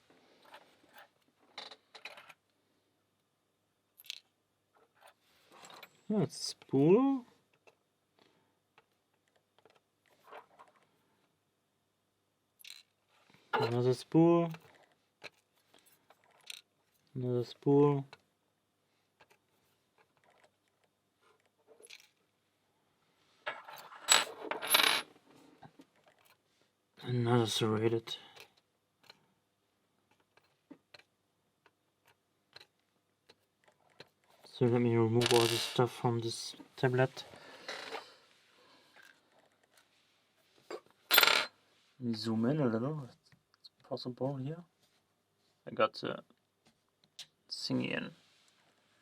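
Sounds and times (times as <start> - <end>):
metal pins clattering on hard surface: 23.5 - 25.1, 35.2 - 35.8, 41.1 - 41.5.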